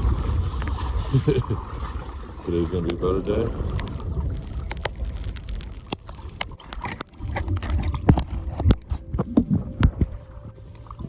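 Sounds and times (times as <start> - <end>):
low rumble: 3.2 - 11.0.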